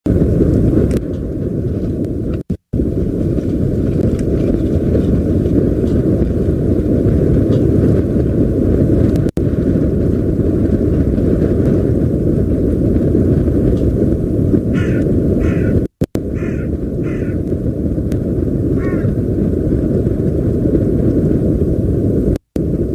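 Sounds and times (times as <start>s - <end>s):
wind buffeting microphone: 0.1s - 22.9s
osprey alarm call: 14.7s - 17.4s, 18.8s - 19.2s.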